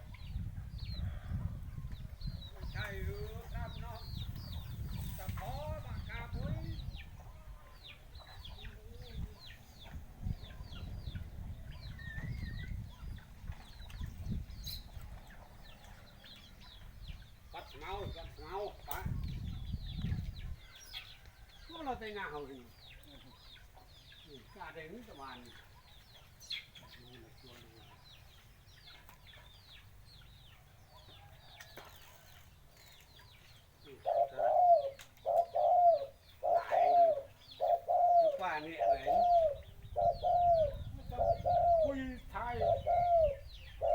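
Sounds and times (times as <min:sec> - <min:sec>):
small birds chirping: 0:00.0 - 0:43.9
dove cooing: 0:33.9 - 0:43.9.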